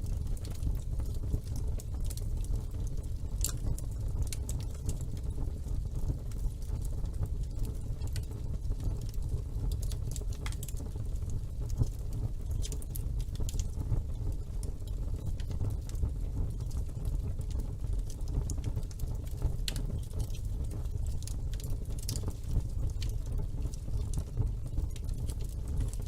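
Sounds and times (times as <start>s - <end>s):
fire crackles and pops: 0.0s - 26.0s
wood fire rumbling: 0.0s - 26.0s.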